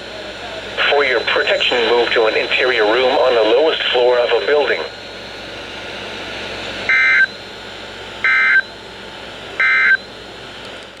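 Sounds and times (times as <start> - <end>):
radio hiss: 0.0 - 5.3.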